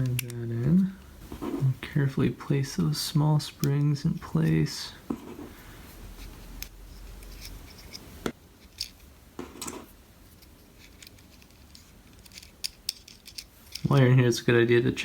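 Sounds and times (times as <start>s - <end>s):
small plastic parts clicking: 0.0s - 0.4s, 10.4s - 14.1s.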